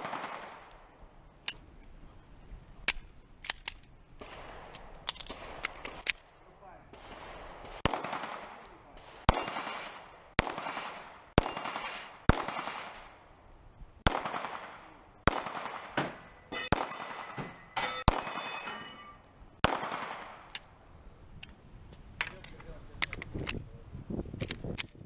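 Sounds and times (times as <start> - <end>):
pistol shots with echo: 0.0 - 0.9, 4.2 - 13.4, 14.0 - 20.5
metallic ringing: 14.8 - 19.4.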